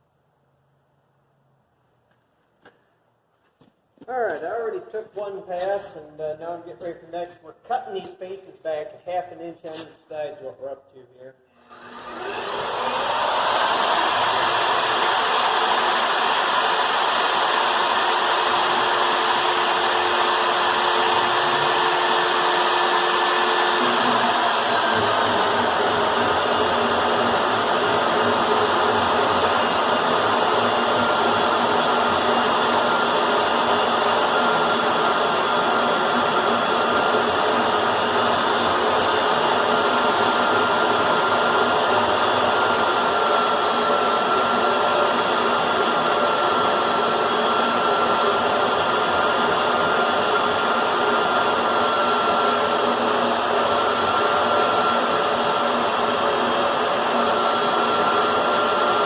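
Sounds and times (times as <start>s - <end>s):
motor whine: 11.6s - 59.0s
metal cutting noise: 11.7s - 47.8s.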